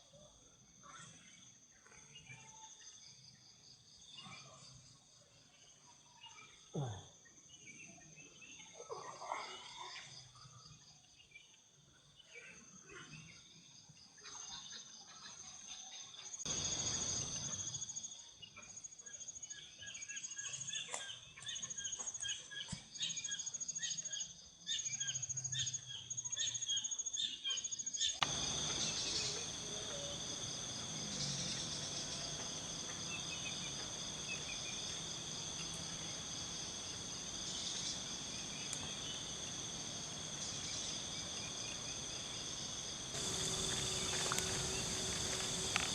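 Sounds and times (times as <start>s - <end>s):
insects chirring: 16.5s - 17.7s, 28.2s - 45.9s
background hiss: 28.2s - 45.9s.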